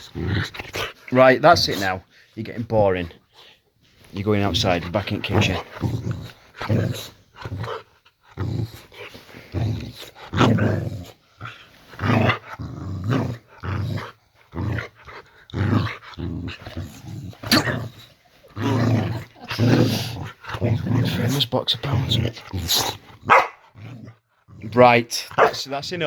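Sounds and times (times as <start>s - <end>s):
dog growling: 0.0s - 2.0s, 4.5s - 26.0s
dog yapping: 23.3s - 23.6s.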